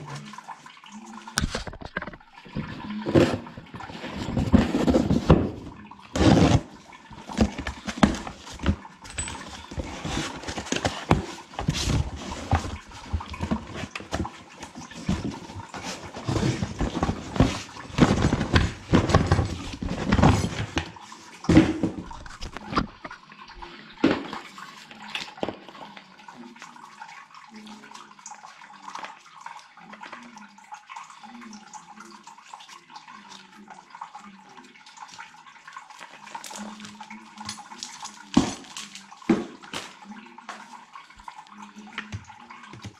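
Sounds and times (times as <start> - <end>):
water splashing: 0.0 - 42.9
knocking and clattering of pump: 1.4 - 23.1, 42.0 - 42.9.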